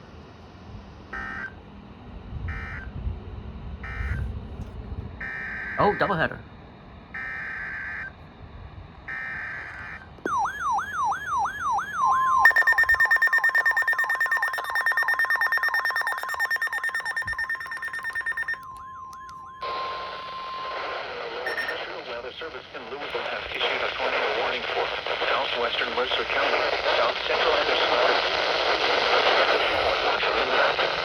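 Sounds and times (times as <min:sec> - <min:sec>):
steady alarm tone: 0:01.1 - 0:01.6, 0:03.8 - 0:04.3, 0:05.2 - 0:06.4, 0:07.0 - 0:08.2, 0:09.0 - 0:21.9
screeching data tones: 0:05.2 - 0:06.4, 0:09.1 - 0:22.0
fast pulsing beeps: 0:05.6 - 0:06.4, 0:10.3 - 0:21.9
broadcast hiss: 0:05.8 - 0:06.4, 0:19.6 - 0:31.0
siren-like sweeping tone: 0:09.1 - 0:20.9.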